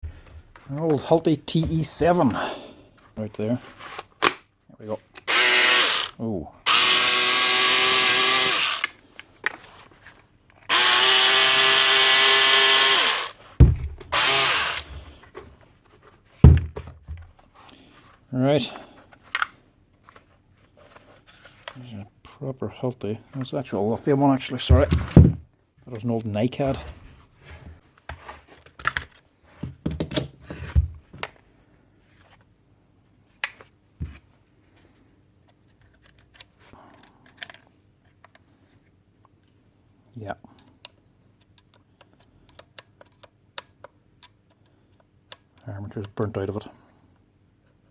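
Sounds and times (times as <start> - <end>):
power tool being handled: 5.2 - 9.6, 10.6 - 15.0
drill motor running: 5.3 - 8.9, 10.7 - 13.4, 14.1 - 14.9.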